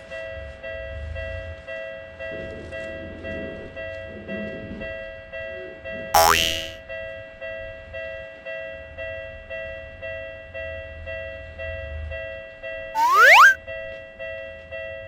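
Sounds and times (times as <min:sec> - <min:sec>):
rising glide sound effect: 0:13.0 - 0:13.6.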